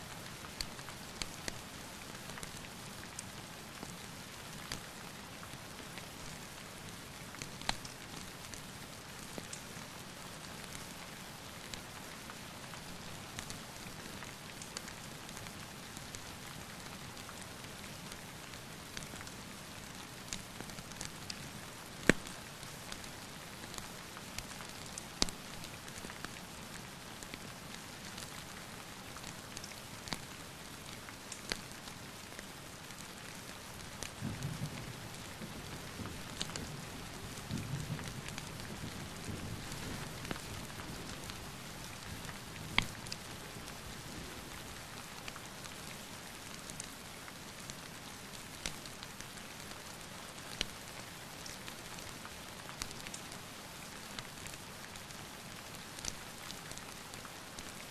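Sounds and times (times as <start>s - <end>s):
steady rain hissing: 0.0s - 57.9s
wood fire crackling and popping: 22.0s - 22.3s, 42.7s - 43.1s.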